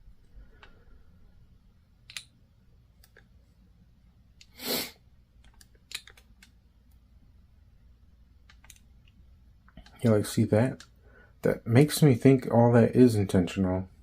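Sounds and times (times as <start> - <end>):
plastic figure clicking and tapping: 2.1 - 2.3.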